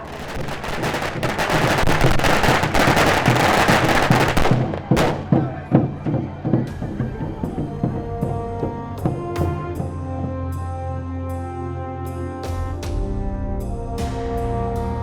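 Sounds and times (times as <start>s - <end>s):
firecrackers crackling and banging: 0.0s - 7.0s
music: 0.0s - 15.0s.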